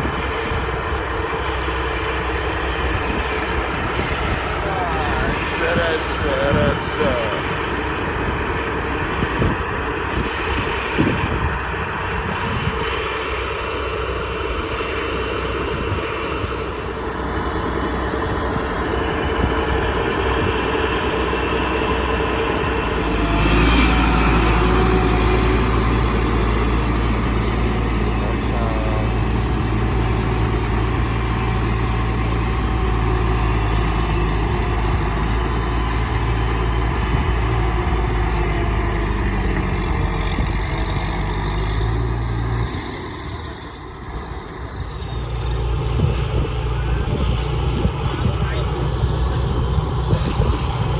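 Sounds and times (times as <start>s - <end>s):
combine harvester engine running: 0.0s - 50.9s.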